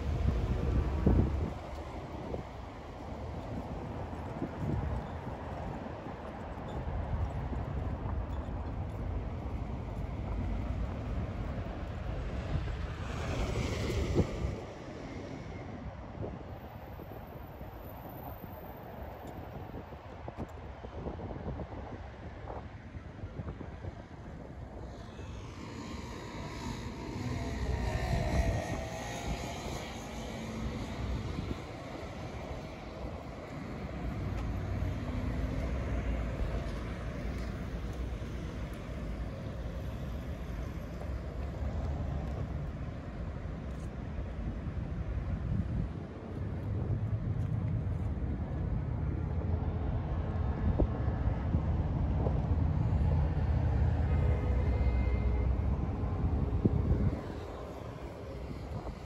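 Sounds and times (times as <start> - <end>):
wind buffeting microphone: 0.0 - 17.7, 19.4 - 59.0
low rumble of city traffic: 0.0 - 59.0
motor drone passing: 25.1 - 32.6.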